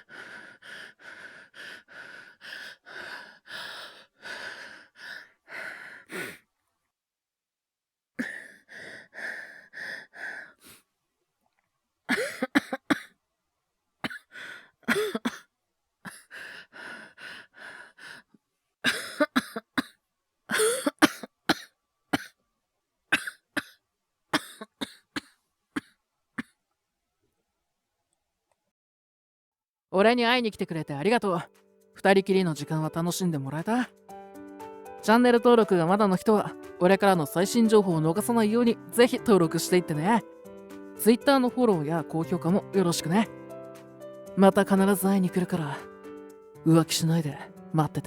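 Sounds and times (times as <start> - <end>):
gasping breaths: 0.0 - 6.5, 8.2 - 10.8, 16.1 - 18.4
man breathing quickly: 0.0 - 6.5, 8.2 - 10.9, 16.1 - 18.4
man coughing: 12.1 - 13.1, 14.9 - 15.4, 18.9 - 22.4, 23.2 - 23.8, 24.4 - 26.5.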